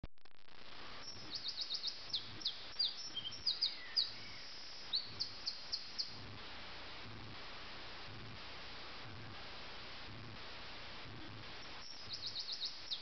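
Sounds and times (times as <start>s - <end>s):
background hiss: 0.3s - 13.0s
nightingale singing: 1.0s - 6.2s, 11.6s - 13.0s.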